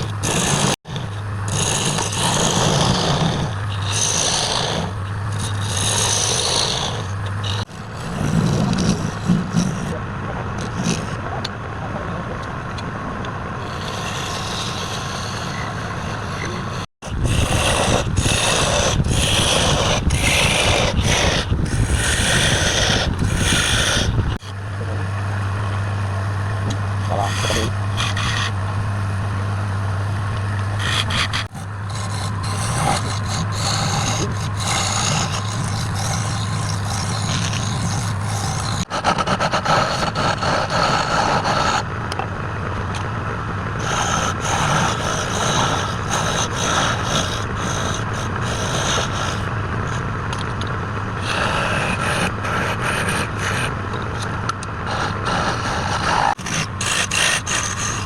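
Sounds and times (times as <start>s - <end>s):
tool scraping spinning wood: 0.0s - 11.5s, 13.5s - 43.1s, 43.8s - 58.0s
lathe motor hum: 13.0s - 58.0s.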